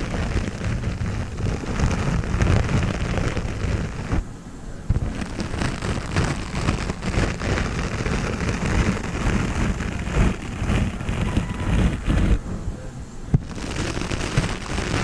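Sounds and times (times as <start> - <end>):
honeycomb crunching: 0.0 - 4.2, 4.9 - 12.4, 13.4 - 15.0
soft low thumps: 4.8 - 15.0.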